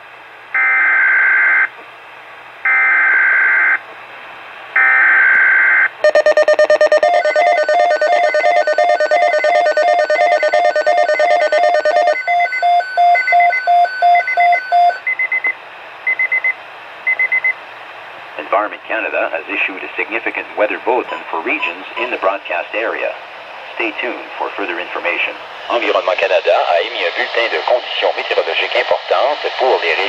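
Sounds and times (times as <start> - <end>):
electronic beeps: 4.8 - 17.5
pulsing electronic alert tone: 6.0 - 14.9.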